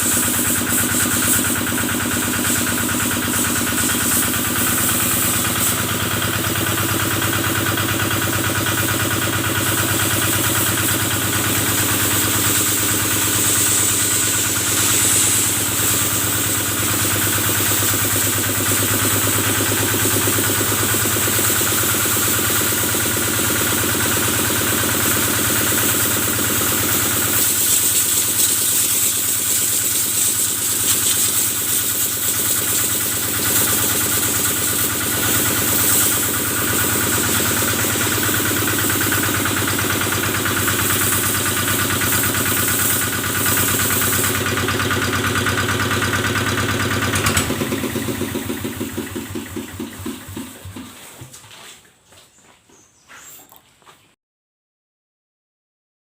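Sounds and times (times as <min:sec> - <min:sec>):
high hiss: 0:00.0 - 0:22.2, 0:25.7 - 0:44.6
diesel engine running: 0:00.0 - 0:51.0.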